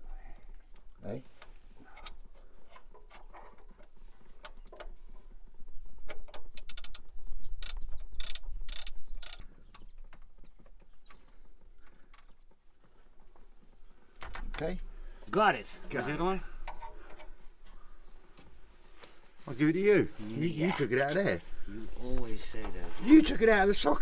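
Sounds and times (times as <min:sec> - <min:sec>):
ratchet clicking: 0:06.6 - 0:09.5.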